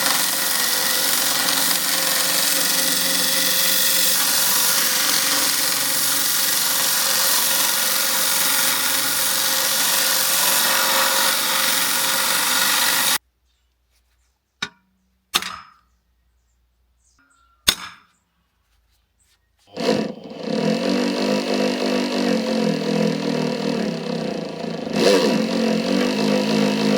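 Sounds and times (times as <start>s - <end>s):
power tool running: 0.0s - 13.2s, 19.7s - 26.9s.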